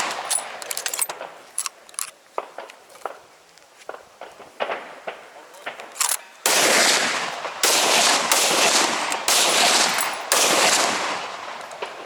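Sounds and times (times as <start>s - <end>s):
rifle shots with echo: 4.6s - 12.0s.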